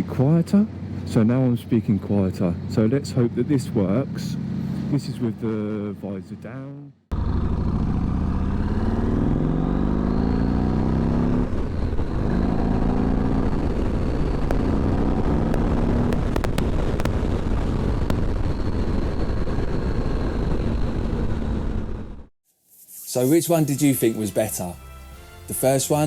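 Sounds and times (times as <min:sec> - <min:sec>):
motorcycle engine accelerating: 0:00.0 - 0:05.9, 0:07.1 - 0:22.3
road rumble: 0:00.0 - 0:22.3
wind noise in helmet: 0:11.2 - 0:22.3
sharp clicks: 0:14.4 - 0:17.2.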